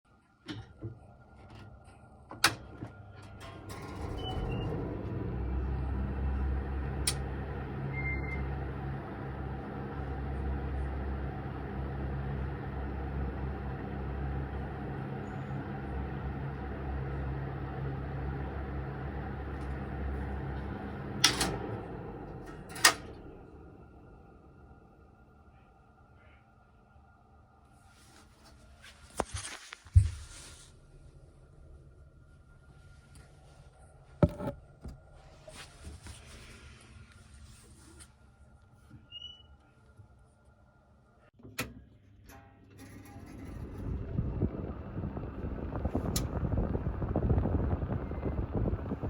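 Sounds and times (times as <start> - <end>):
ventilation fan hum: 0.1 - 49.0
fan switch click: 21.1 - 21.7, 22.5 - 23.2.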